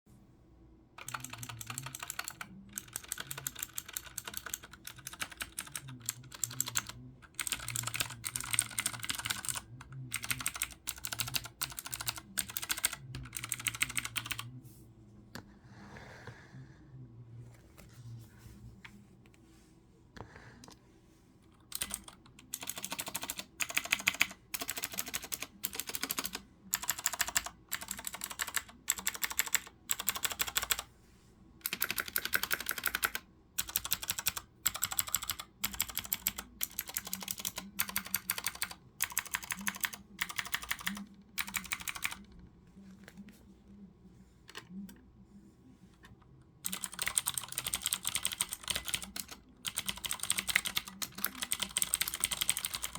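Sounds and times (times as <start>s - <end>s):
mechanical keyboard typing: 1.0s - 14.5s, 21.6s - 30.8s, 31.6s - 42.3s, 46.6s - 52.9s.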